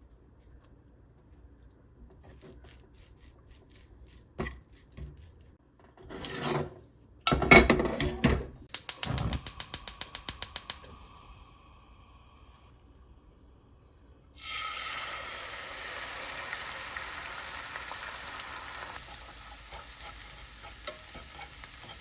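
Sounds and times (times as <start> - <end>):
ratcheting clicks: 8.7 - 10.8.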